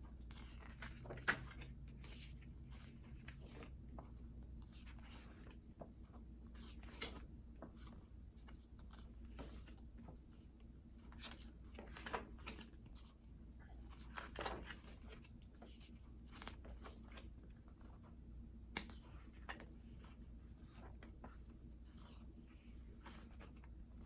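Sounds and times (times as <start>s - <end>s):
photobook pages turning: 0.1s - 10.2s, 13.8s - 18.0s, 22.8s - 24.0s.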